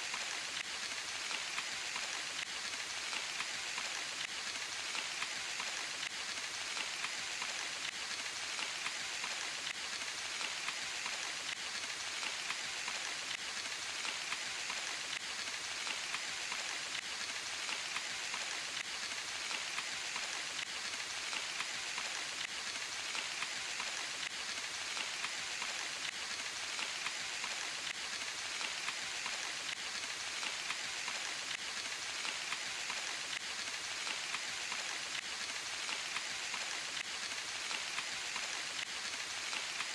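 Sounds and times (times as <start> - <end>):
steady rain in forest: 0.0 - 39.9.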